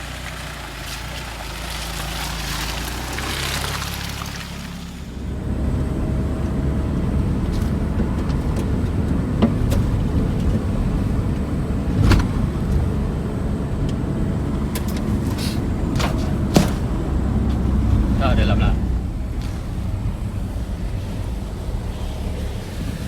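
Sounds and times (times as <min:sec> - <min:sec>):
truck engine rumbling: 0:00.0 - 0:23.0
knocks and rattles: 0:14.7 - 0:17.6.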